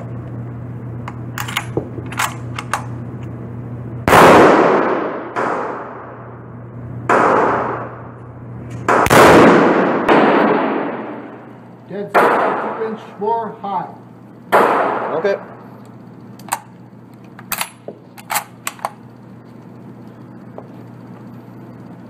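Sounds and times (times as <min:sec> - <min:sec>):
echoing gunshots indoors: 0:04.0 - 0:06.4, 0:07.1 - 0:08.1, 0:08.9 - 0:13.0, 0:14.5 - 0:15.6.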